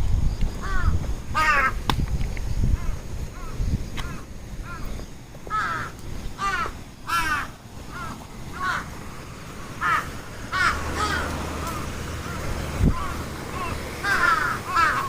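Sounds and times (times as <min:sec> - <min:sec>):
birds calling: 0:00.2 - 0:15.0.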